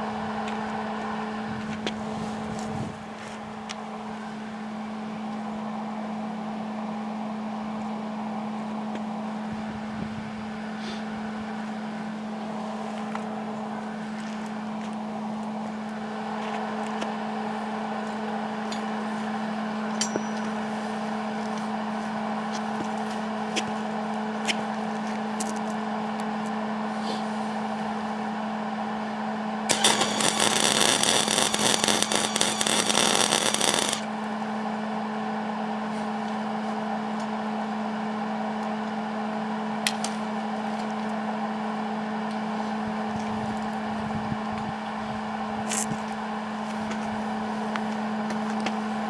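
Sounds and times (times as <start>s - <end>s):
steady hum: 17.2s - 35.8s
welding arc crackling: 29.7s - 34.2s.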